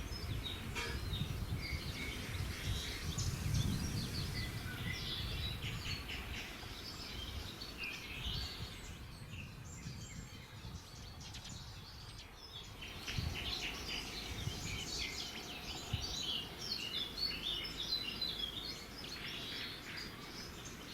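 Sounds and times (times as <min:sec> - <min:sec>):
small birds chirping: 0:00.0 - 0:20.9.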